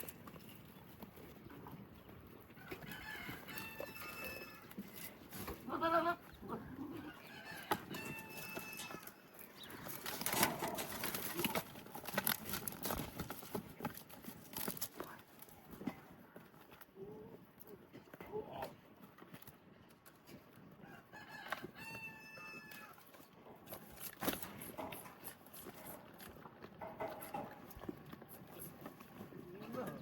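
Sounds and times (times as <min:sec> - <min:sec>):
farm animals calling: 0:02.3 - 0:12.7.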